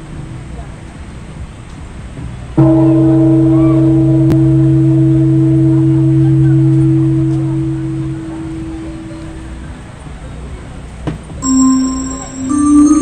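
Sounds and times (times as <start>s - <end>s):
deep clock tower bell chime: 2.6s - 10.5s, 11.4s - 13.0s.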